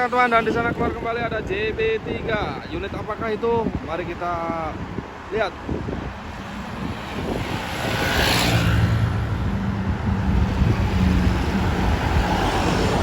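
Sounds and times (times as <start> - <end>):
passing traffic rush: 0.0 - 13.0
diesel bus engine drone: 5.7 - 13.0.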